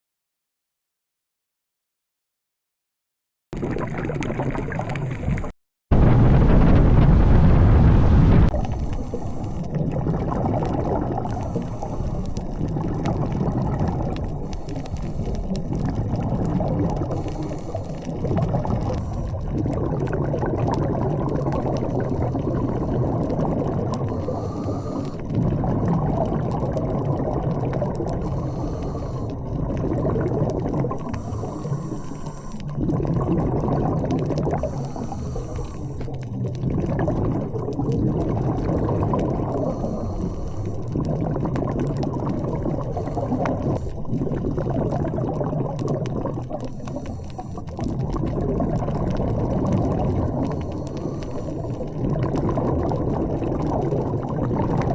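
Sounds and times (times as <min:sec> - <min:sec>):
muffled underwater water rush: 0:03.6 - 0:54.9
faint clicks: 0:45.4 - 0:53.9.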